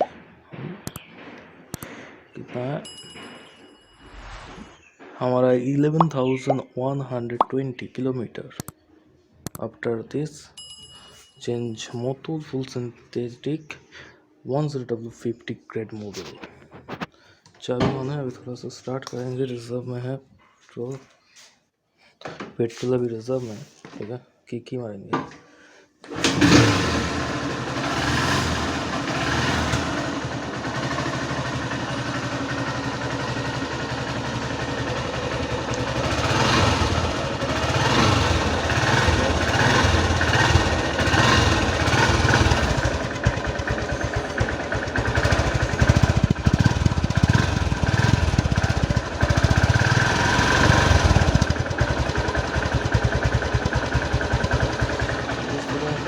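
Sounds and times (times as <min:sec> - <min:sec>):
motorcycle engine starting and running: 0:26.1 - 0:56.0
motorcycle throttle blips: 0:26.2 - 0:55.4.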